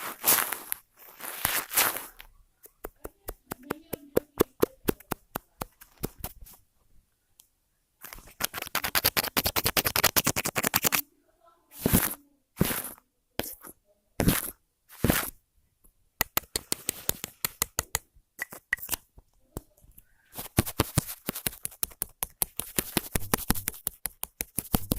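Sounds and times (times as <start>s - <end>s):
scratchy rubbing: 0.0s - 6.6s, 8.0s - 11.0s, 11.8s - 15.4s, 20.3s - 24.9s
small clicks and taps: 15.8s - 24.9s.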